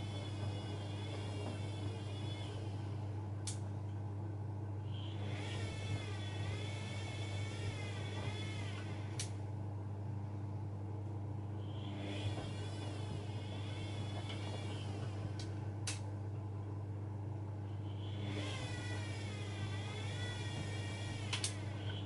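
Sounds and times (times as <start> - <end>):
motor whine: 0.0 - 22.0
washing machine hum: 0.0 - 22.0
sharp clicks: 21.3 - 21.6.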